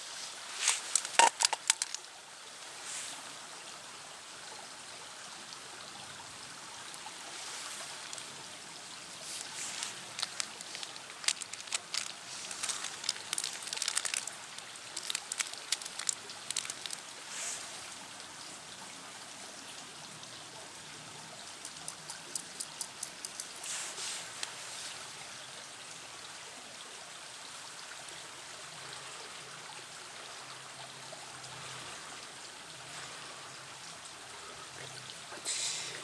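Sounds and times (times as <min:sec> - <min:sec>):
wood pellets crackling and popping: 0:00.5 - 0:02.0, 0:06.9 - 0:08.4, 0:09.2 - 0:17.6, 0:21.6 - 0:24.6.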